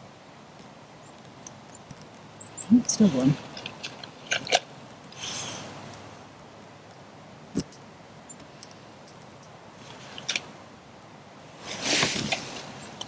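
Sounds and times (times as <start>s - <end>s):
sticks rustling: 3.0s - 6.0s, 9.8s - 10.6s, 11.6s - 13.0s.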